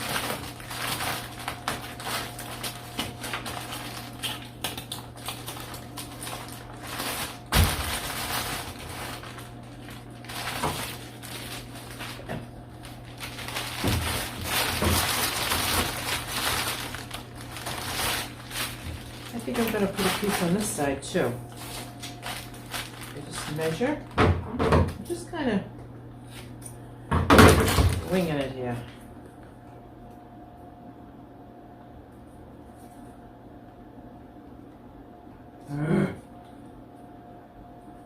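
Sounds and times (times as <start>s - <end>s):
insulation and tape crinkling: 0.0s - 24.5s, 27.4s - 29.7s
steady low hum: 0.0s - 38.0s.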